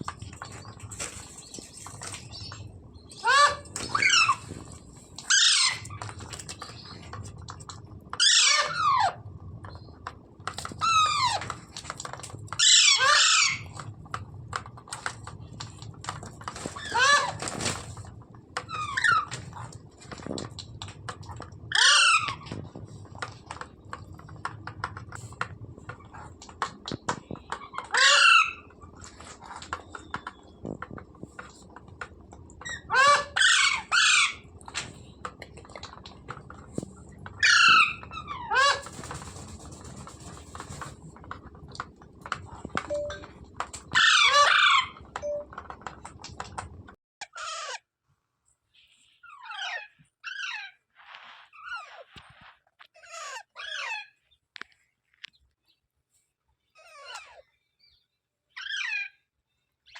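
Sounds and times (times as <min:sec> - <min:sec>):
parrot squawking: 0:03.1 - 0:04.5, 0:05.3 - 0:06.0, 0:08.2 - 0:09.2, 0:12.6 - 0:13.7, 0:21.7 - 0:22.4, 0:27.8 - 0:28.7, 0:32.6 - 0:34.5, 0:37.4 - 0:39.0, 0:44.0 - 0:45.0, 0:58.5 - 0:59.2
faint clicks and taps: 0:13.7 - 0:16.8, 0:22.4 - 0:27.9, 0:28.8 - 0:32.7, 0:39.0 - 0:44.0, 0:45.0 - 0:47.0.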